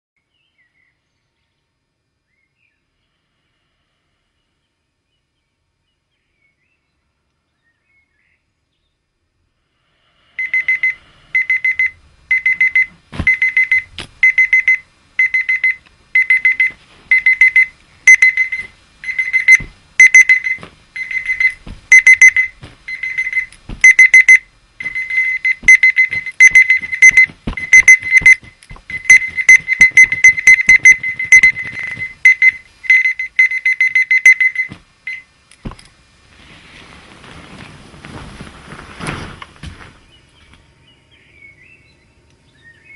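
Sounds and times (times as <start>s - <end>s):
alarm clock rapid beeping: 10.4s - 35.3s.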